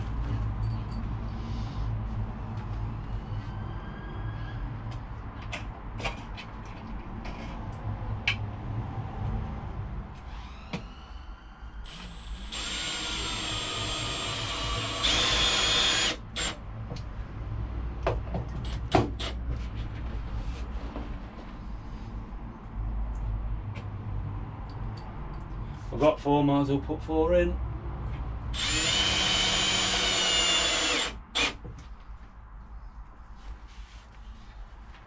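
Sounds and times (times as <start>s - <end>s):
power drill whining: 11.8s - 16.6s, 28.6s - 31.6s.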